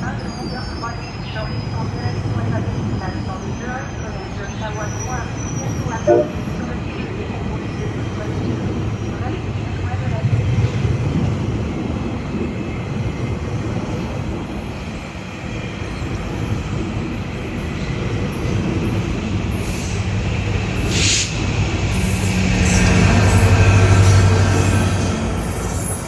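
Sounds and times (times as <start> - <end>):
train wheels rumbling on rails: 6.5 - 26.0.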